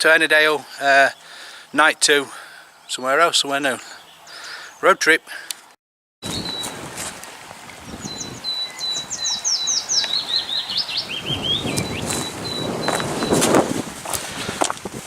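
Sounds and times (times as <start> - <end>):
songbird singing: 0.0 - 7.0, 7.7 - 13.8
people walking: 6.4 - 7.8, 11.8 - 15.0.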